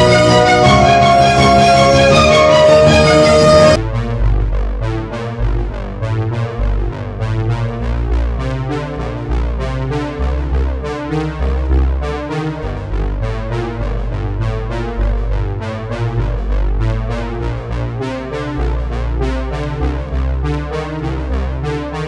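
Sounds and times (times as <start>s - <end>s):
steady beat: 0.0s - 3.8s
heavy bass line: 0.0s - 22.0s
synthesizer and keyboard music: 0.0s - 22.0s.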